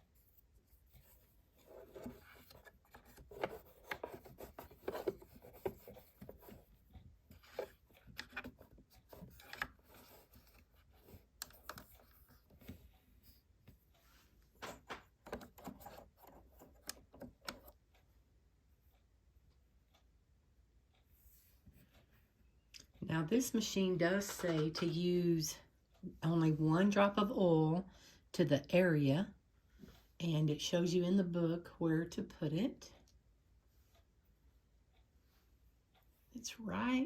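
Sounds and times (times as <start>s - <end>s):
cotton swab scratching machine parts: 0.0s - 6.7s.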